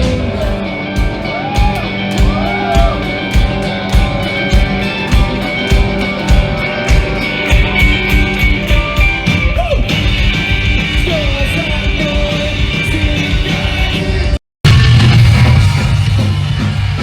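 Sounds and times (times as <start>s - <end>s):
drum kit: 0.0s - 17.0s
electric guitar: 0.0s - 17.0s
live punk band playing: 0.0s - 17.0s
person singing: 10.8s - 14.4s.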